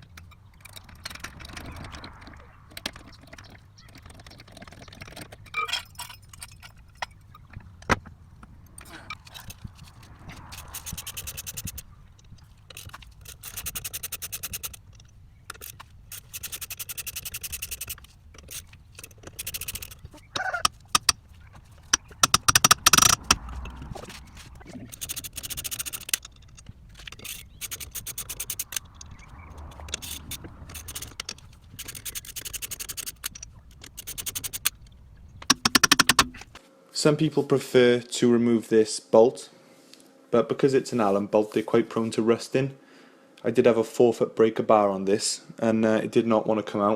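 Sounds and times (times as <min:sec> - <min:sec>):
metal scraping: 0:00.0 - 0:36.6
rapid metallic clicking: 0:00.0 - 0:36.6
loud metal knocks: 0:22.0 - 0:23.5.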